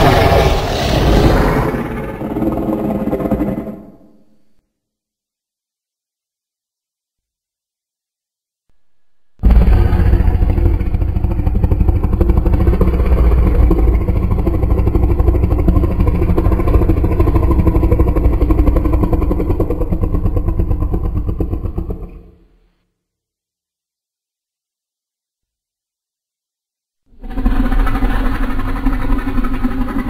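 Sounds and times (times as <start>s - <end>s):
dragon growl: 0.0s - 4.0s, 9.4s - 22.6s.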